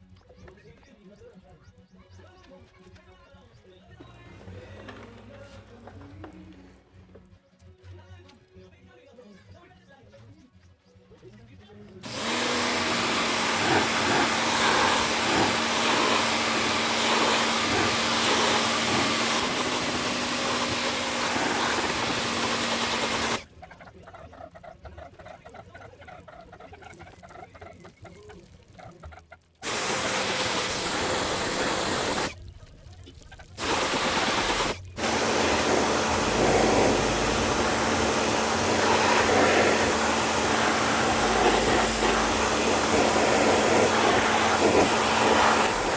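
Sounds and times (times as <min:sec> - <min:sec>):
pressure washer spraying: 0:12.0 - 0:23.5, 0:29.6 - 0:32.4, 0:33.6 - 0:45.9
faint motor hum: 0:33.6 - 0:45.9.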